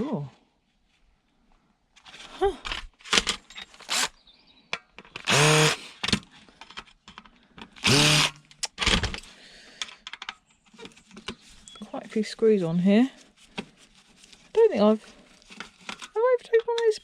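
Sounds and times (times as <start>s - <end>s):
power drill running: 3.8s - 4.1s, 5.2s - 5.9s, 7.8s - 9.0s.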